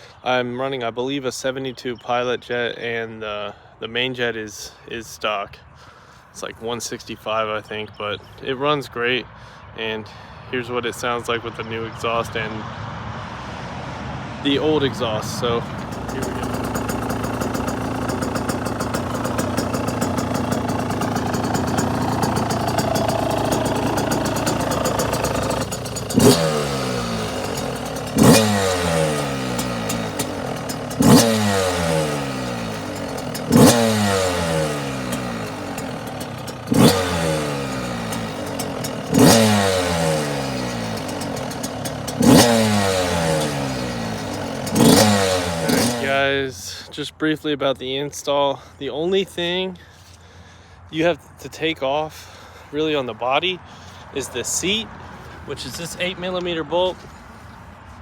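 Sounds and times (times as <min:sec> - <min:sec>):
dirt bike engine revving: 0:14.2 - 0:46.5.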